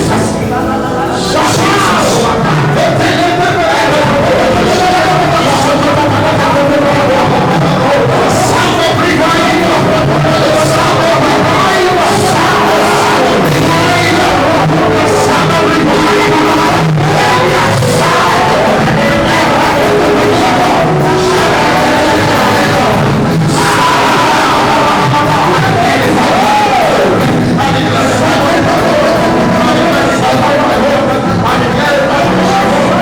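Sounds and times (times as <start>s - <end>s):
congregation singing and calling out: 0.0s - 33.0s
live worship music: 0.0s - 33.0s.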